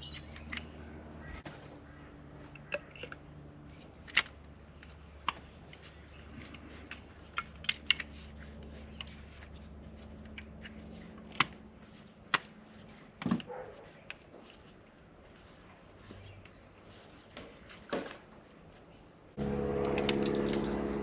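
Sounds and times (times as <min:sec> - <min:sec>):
low steady hum: 0:19.3 - 0:21.0.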